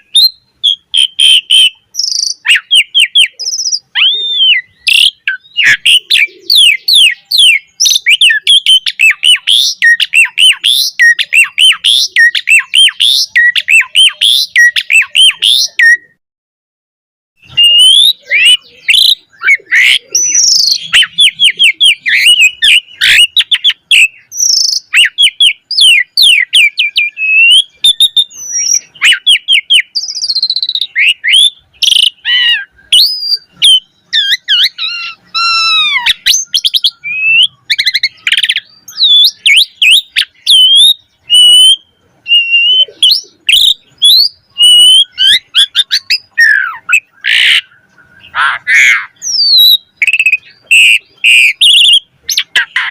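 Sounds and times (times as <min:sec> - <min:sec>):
starling singing varied whistles: 0:00.0 - 0:16.2, 0:17.4 - 0:52.9.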